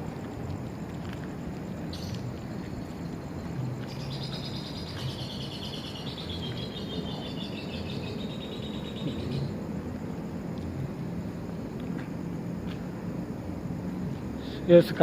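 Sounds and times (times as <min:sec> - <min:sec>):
low background rumble: 0:00.0 - 0:14.6
high-pitched pulsed trilling call: 0:03.9 - 0:09.6.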